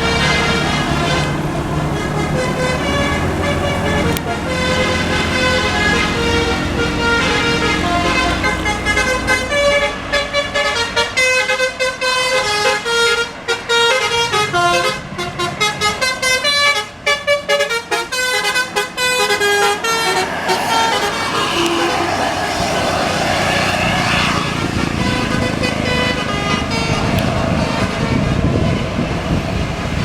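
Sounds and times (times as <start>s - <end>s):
bus horn playing melody: 0.0s - 29.4s
low engine rumble: 17.9s - 30.0s.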